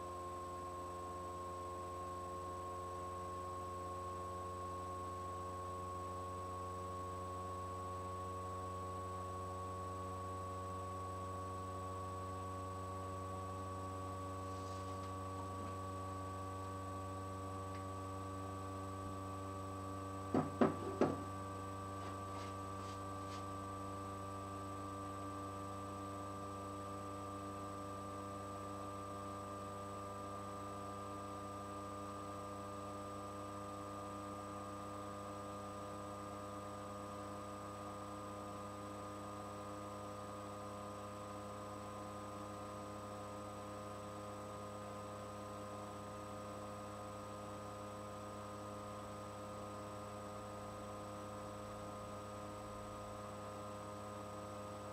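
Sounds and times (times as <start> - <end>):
electrical mains hum: 0.0 - 54.9.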